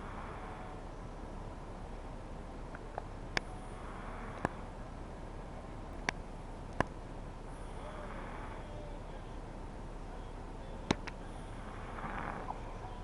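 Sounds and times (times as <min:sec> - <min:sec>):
steady background hiss: 0:00.0 - 0:13.0
toddler softly snoring: 0:07.6 - 0:08.8, 0:11.3 - 0:12.8
sharp clicks: 0:10.9 - 0:11.2.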